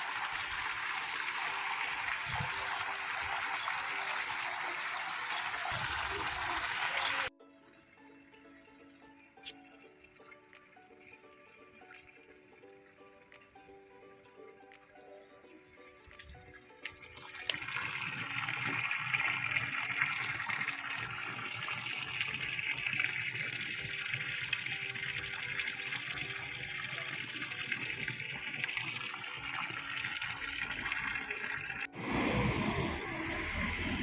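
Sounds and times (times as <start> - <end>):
running water rushing: 0.0 - 7.3, 16.9 - 34.0
faint music: 7.3 - 34.0.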